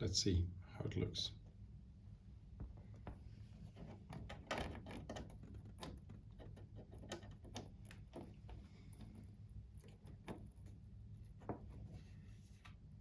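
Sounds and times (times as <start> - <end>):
low steady hum: 0.0 - 13.0
plastic parts clicking and knocking: 3.8 - 10.7.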